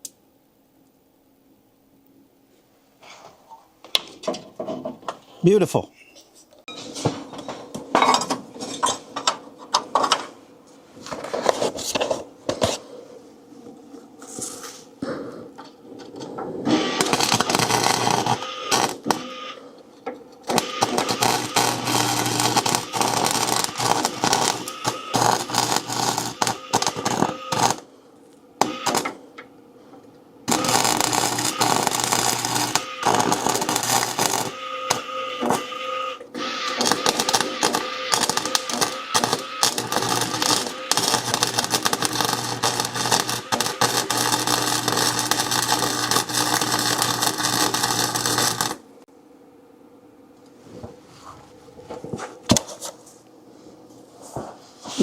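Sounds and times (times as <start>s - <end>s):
low electrical hum: 0.0s - 55.0s
welding crackle: 16.7s - 19.6s, 20.4s - 27.9s, 28.6s - 29.2s, 30.5s - 48.9s.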